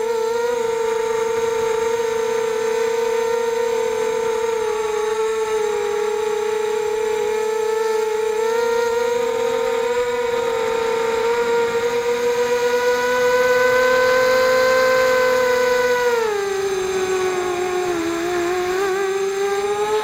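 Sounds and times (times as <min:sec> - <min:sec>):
quadcopter motors whining: 0:00.0 - 0:20.0.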